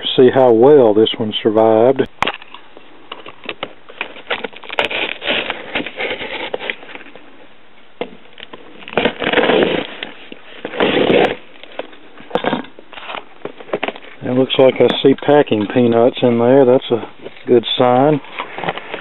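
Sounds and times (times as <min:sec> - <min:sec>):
cardboard box being opened: 0:03.2 - 0:07.2, 0:08.3 - 0:11.9
cardboard tearing and rustling: 0:03.2 - 0:07.2, 0:08.3 - 0:14.2, 0:18.2 - 0:19.0.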